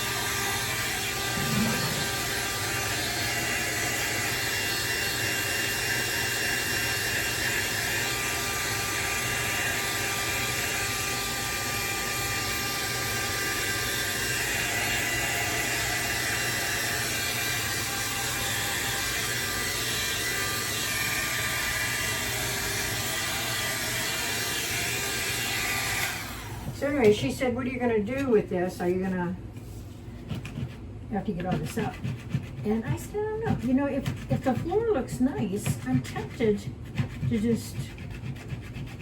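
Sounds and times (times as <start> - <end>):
hair dryer blowing: 0.0 - 27.2.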